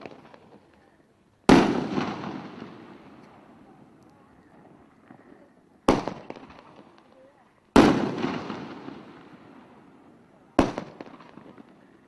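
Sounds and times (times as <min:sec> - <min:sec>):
firework bang with echo: 0:01.5 - 0:03.0, 0:07.8 - 0:09.5.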